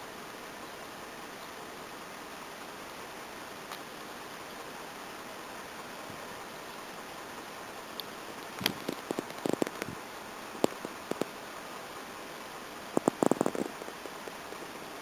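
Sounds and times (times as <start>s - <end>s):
rain hissing: 0.0s - 15.0s
raindrops tapping on car: 8.4s - 10.0s, 10.6s - 11.4s, 12.9s - 14.8s.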